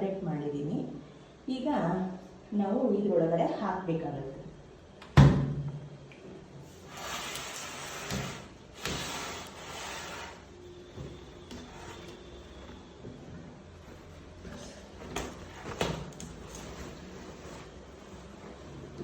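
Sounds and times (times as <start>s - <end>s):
clothes rustling and brushing: 6.7s - 19.0s.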